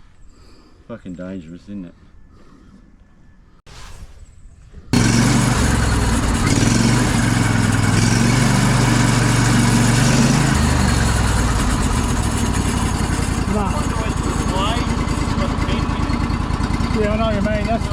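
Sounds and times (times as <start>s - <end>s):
sawmill engine running: 4.9s - 17.9s.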